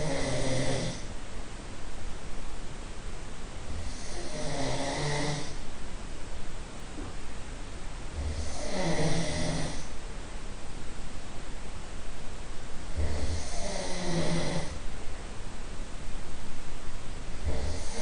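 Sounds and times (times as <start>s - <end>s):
person snoring: 0.0s - 1.1s, 3.7s - 5.6s, 8.2s - 9.9s, 12.9s - 14.8s, 17.4s - 18.0s.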